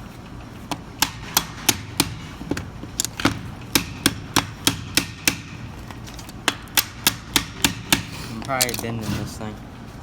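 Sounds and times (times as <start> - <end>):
hammer striking metal part: 1.0 - 5.7, 6.4 - 8.8.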